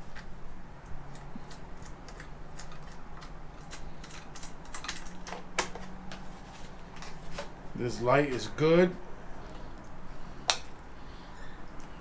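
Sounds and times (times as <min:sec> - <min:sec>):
plastic and metal parts clicking: 0:01.1 - 0:05.9.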